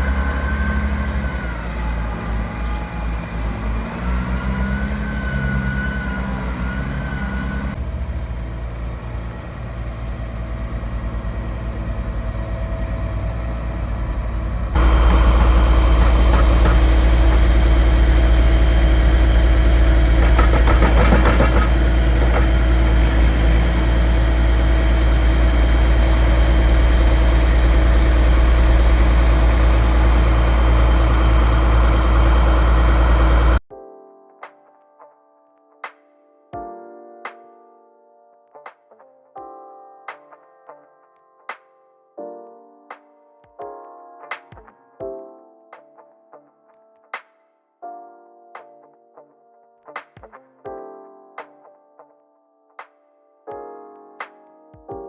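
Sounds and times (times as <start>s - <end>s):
heavy farm vehicle engine: 0.0s - 33.6s.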